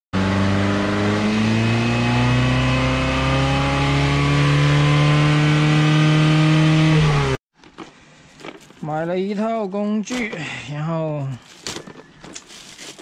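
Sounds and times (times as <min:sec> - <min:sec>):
car engine accelerating: 0:00.1 - 0:07.4.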